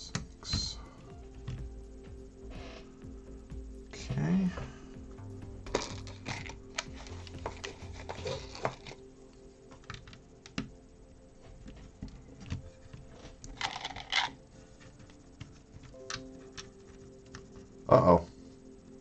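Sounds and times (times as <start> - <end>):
quiet background music: 0.0 - 19.0
plastic bricks clicking and clattering: 12.4 - 14.4.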